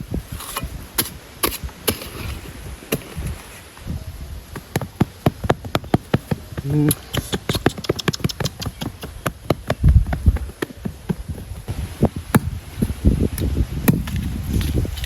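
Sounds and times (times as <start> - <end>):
sharp taps and knocks: 4.5 - 12.5
heavy low thuds: 8.4 - 14.5.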